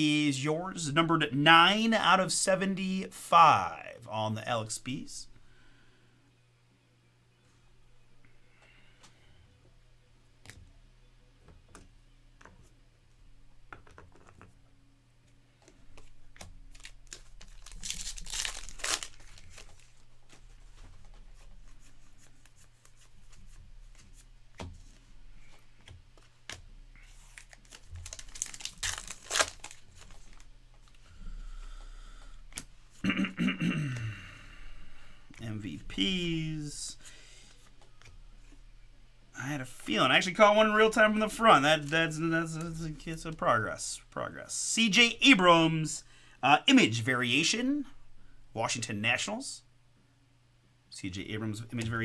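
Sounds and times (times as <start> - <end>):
cards clicking and rustling: 15.6 - 31.1
wrappers tearing and crinkling: 16.6 - 20.4, 27.0 - 31.0.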